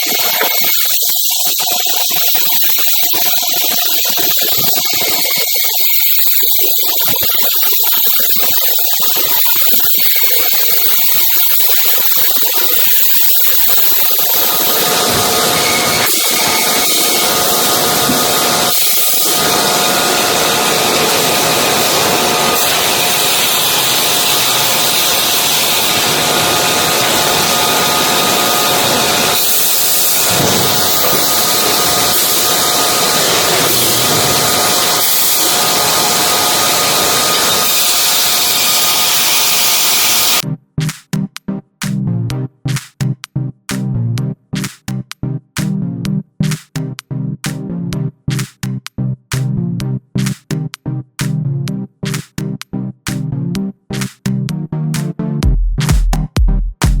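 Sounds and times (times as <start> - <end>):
sawmill saw running: 0.0 - 40.4.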